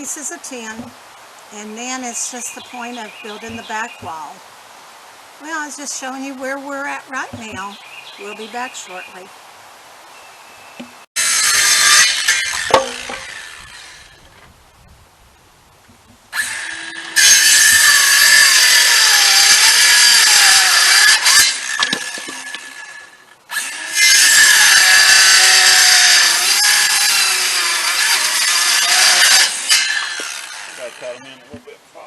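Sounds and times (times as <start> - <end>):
power saw cutting: 11.2 - 14.2, 16.3 - 31.6.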